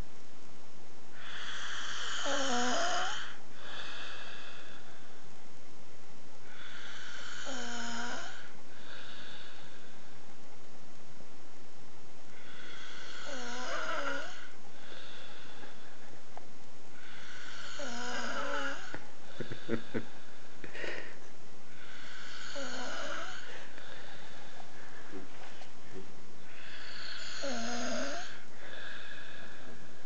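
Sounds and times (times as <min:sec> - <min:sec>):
man snoring: 0:01.2 - 0:04.9, 0:06.4 - 0:09.9, 0:12.4 - 0:15.8, 0:17.0 - 0:20.2, 0:21.7 - 0:24.4, 0:26.5 - 0:29.7.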